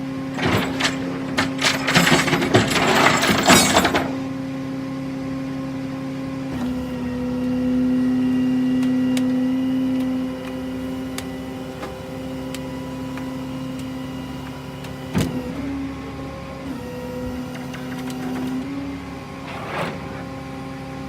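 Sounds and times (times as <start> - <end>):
vehicle machinery whining hum: 0.0 - 21.0
metallic clattering and knocking: 0.4 - 4.1.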